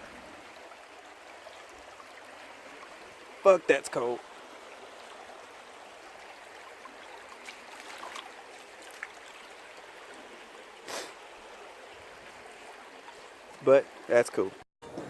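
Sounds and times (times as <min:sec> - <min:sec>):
stream rushing: 0:00.0 - 0:14.6
faint small splashes: 0:06.6 - 0:10.3.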